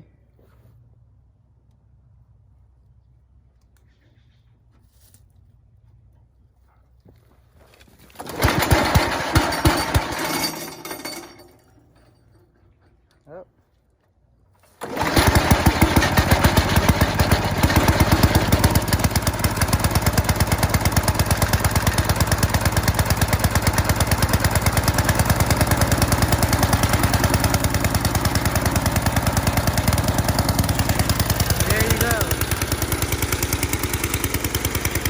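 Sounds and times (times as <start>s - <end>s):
wood chipper engine running: 7.9s - 12.1s, 14.6s - 35.0s.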